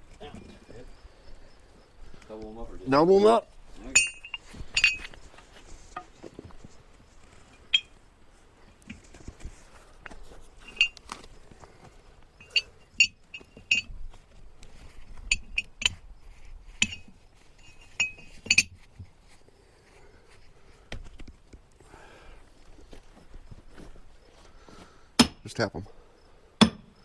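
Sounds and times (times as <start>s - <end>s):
metal-on-metal taps with ring: 3.9s - 5.1s, 10.7s - 11.0s, 12.4s - 13.9s, 16.8s - 18.9s, 26.6s - 26.9s.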